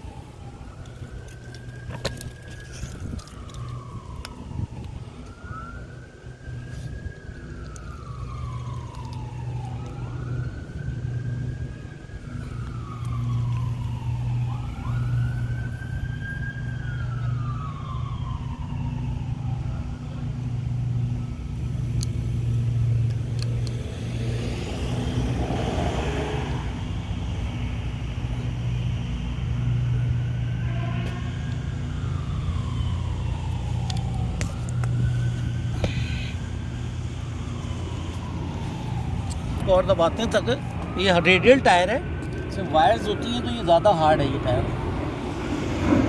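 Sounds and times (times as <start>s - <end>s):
low engine hum: 0.0s - 46.0s
siren wailing: 0.0s - 46.0s.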